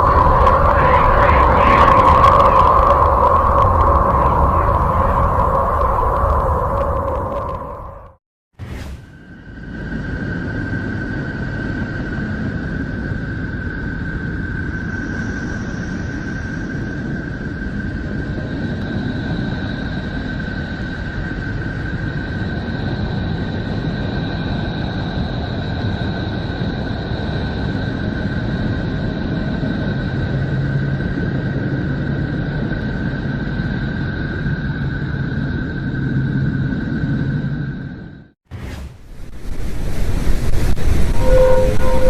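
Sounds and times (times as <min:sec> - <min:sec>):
deep rumbling drone: 0:00.0 - 0:42.0
high steady tone: 0:41.1 - 0:42.0
second higher tone: 0:41.1 - 0:42.0.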